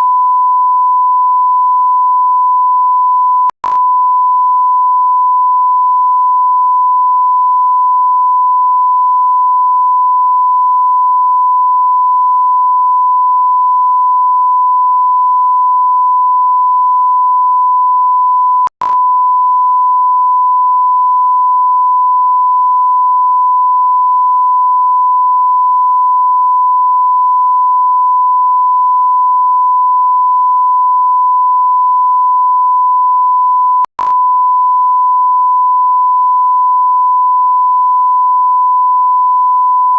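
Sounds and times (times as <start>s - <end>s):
click: 3.4s - 3.9s, 18.7s - 19.0s, 33.9s - 34.2s.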